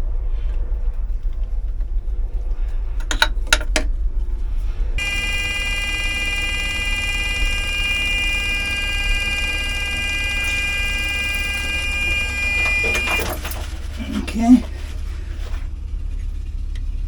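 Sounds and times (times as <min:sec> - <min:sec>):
sharp clicks: 0:05.0 - 0:13.4
electric buzzer tone: 0:05.0 - 0:13.5.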